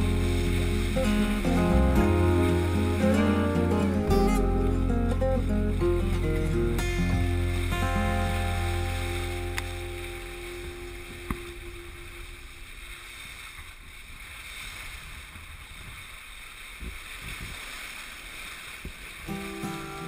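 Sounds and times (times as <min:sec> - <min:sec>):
music track: 0:00.0 - 0:12.7
low thuds: 0:00.0 - 0:13.7
wind and water rushing past boat: 0:00.0 - 0:20.0.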